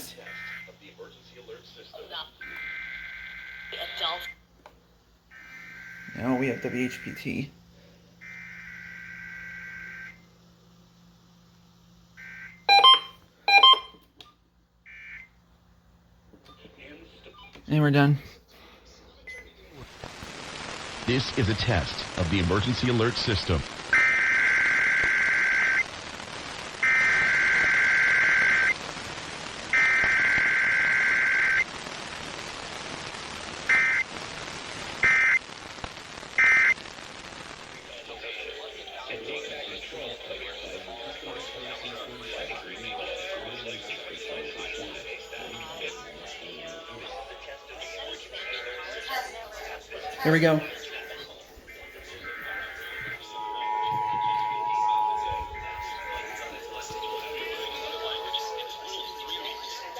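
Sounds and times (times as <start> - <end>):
buzzy two-tone data bursts: 5.4 - 7.5, 50.2 - 59.9
loud electronic beeps: 12.6 - 14.0, 51.7 - 59.9
steady hiss: 19.8 - 59.9.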